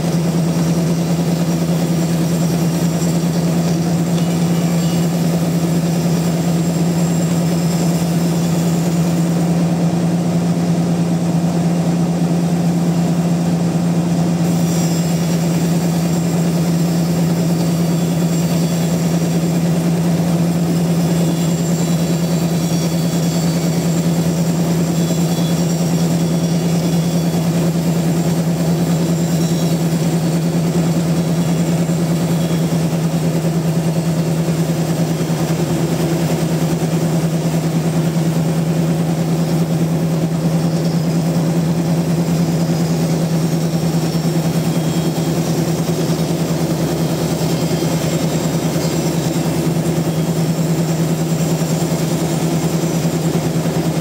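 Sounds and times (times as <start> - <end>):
sawmill machinery running: 0.0 - 54.0.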